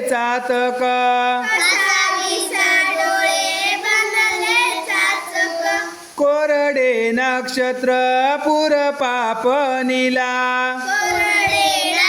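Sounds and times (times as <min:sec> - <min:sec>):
child singing: 0:01.4 - 0:06.1, 0:10.6 - 0:12.0.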